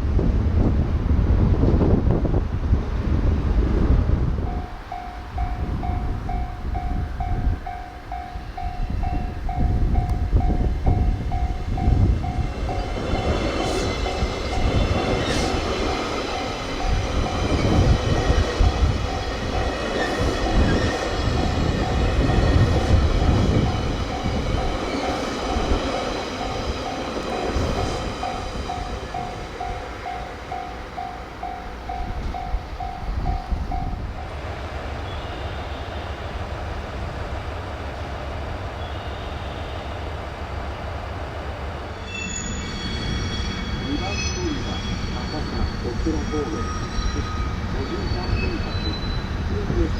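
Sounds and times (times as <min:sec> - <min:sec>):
train passing with rumble and whine: 0:00.0 - 0:49.9
level-crossing warning bell: 0:04.4 - 0:34.4, 0:41.9 - 0:49.9.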